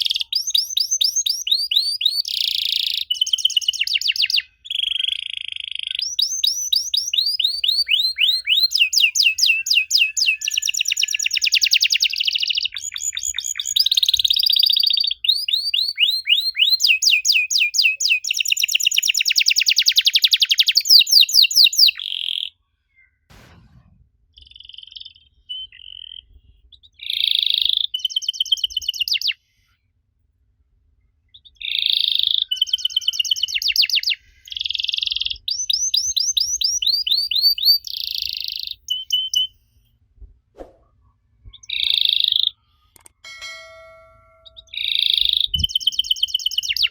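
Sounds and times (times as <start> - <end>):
canary singing: 0.0 - 22.5, 27.0 - 29.4, 31.4 - 39.5, 44.4 - 46.9.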